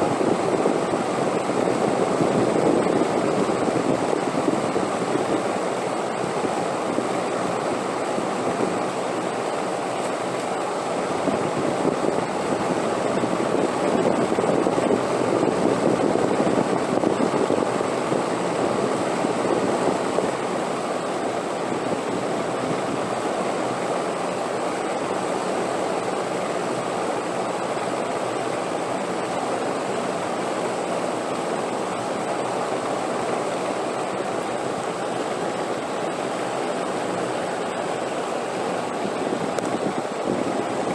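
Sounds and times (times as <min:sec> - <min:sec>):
wind blowing: 0:33.1 - 0:40.9.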